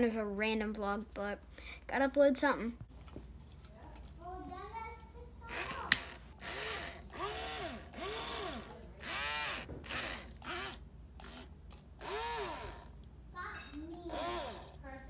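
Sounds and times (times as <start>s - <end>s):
toy robot motors whirring: 5.4s - 13.0s, 13.9s - 15.0s
sharp click: 5.8s - 6.2s.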